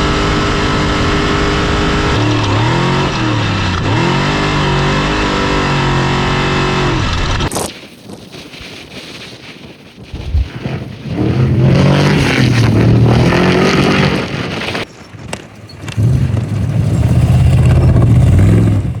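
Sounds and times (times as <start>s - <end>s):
engine running at high revs: 0.0s - 7.5s, 10.2s - 14.9s.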